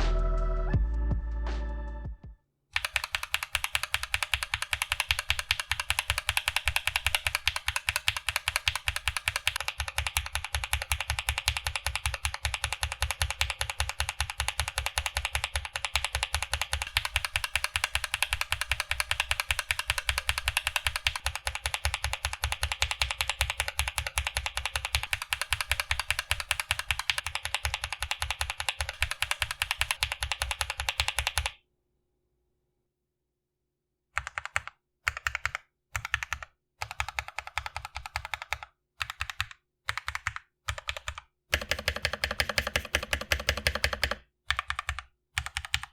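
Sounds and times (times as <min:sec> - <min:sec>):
mechanical keyboard keystrokes: 0:02.8 - 0:31.6, 0:34.2 - 0:45.9.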